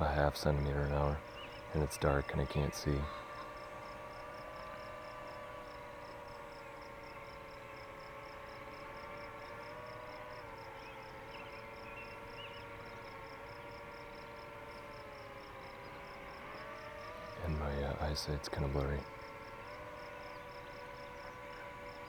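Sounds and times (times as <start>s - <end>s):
drone propellers humming: 0.0s - 22.0s
insect chirping: 0.0s - 22.0s.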